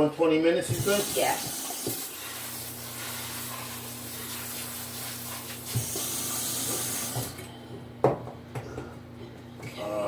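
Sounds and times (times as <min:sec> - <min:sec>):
tap water running into sink: 0:00.6 - 0:07.4.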